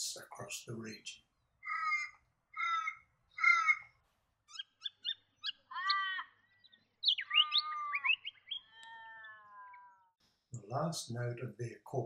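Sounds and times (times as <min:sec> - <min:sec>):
raven sliding calls: 0:01.6 - 0:10.0
raven cawing: 0:01.6 - 0:10.1.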